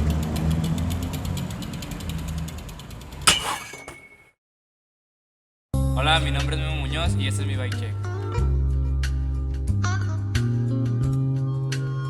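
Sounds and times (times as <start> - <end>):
metallic clank: 3.2 - 4.4.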